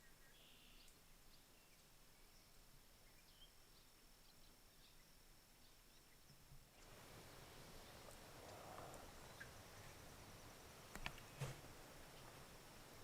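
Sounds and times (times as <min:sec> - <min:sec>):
faint chirps: 0:00.0 - 0:11.4.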